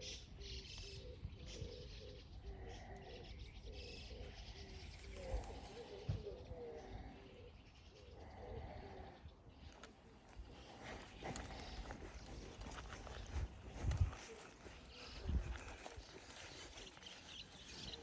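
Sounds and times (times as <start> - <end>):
bird cooing: 0.0 - 18.0
bird chirps: 9.6 - 18.0.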